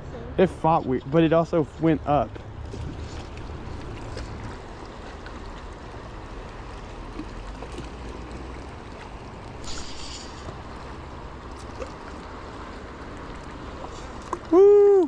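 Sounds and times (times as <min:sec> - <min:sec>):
river water rushing: 0:00.4 - 0:15.0
brief hiss: 0:09.6 - 0:10.6.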